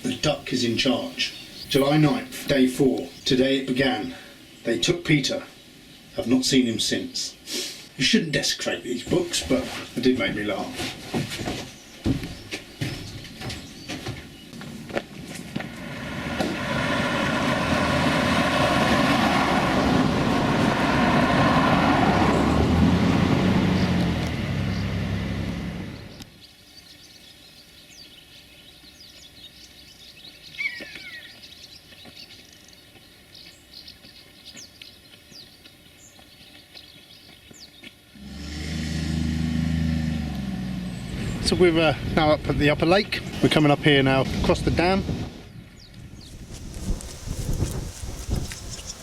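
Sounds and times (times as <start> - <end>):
birds chirping: 0.0 - 15.7, 22.1 - 38.6, 40.0 - 49.0
engine-like machine running: 22.3 - 26.2.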